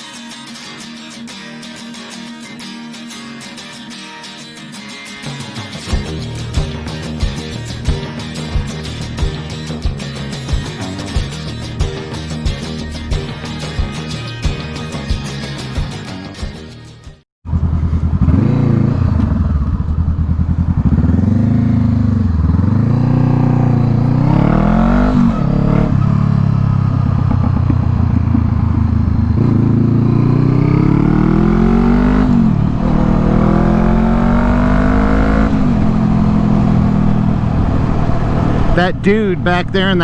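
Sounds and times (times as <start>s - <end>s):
music track: 0.0s - 17.2s, 38.8s - 40.0s
motorcycle engine shifting gears: 17.5s - 38.8s.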